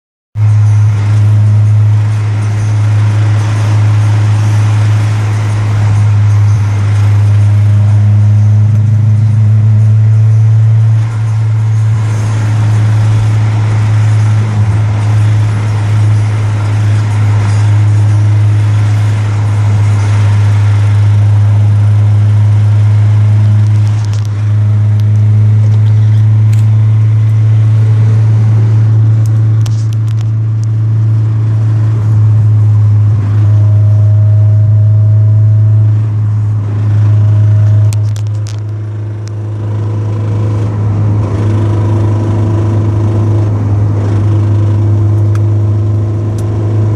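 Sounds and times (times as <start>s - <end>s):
car hum: 0.4s - 46.9s
rattling ticks and clicks: 23.2s - 27.5s, 29.1s - 30.8s, 37.5s - 46.6s.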